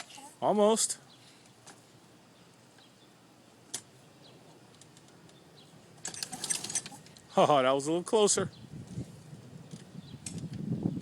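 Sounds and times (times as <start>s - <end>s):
recoil cord rattling clicks: 9.7s - 10.6s.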